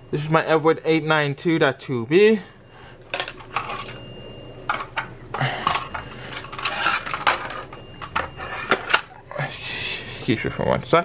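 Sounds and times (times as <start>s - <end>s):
plastic and metal devices clattering: 3.1s - 4.0s, 4.7s - 9.1s.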